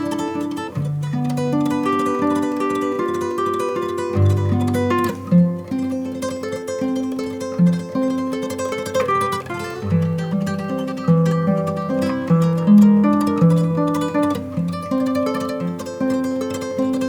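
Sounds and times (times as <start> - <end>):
plucked string instrumental music: 0.0 - 17.0.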